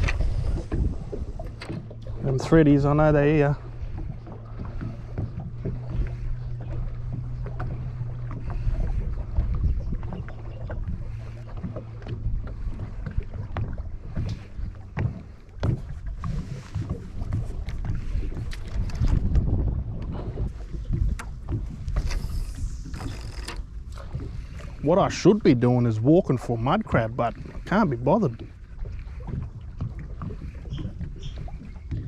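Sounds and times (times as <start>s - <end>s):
wind on microphone: 0.0s - 32.0s
knocks against boat: 3.9s - 16.1s.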